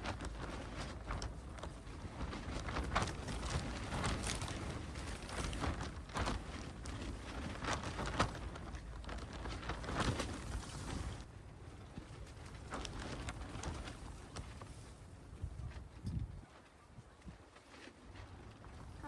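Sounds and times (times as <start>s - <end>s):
footsteps in snow: 0.0s - 11.2s.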